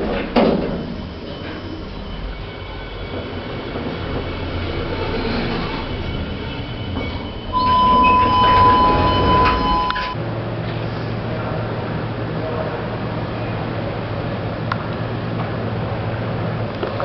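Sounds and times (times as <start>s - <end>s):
lift car rumbling: 0.0s - 17.0s
loud high tone: 7.5s - 10.2s.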